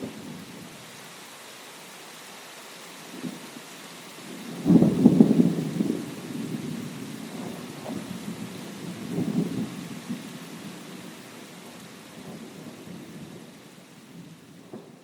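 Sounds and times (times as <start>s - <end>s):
steady rain: 0.0s - 15.0s
thunder rumble: 4.3s - 15.0s.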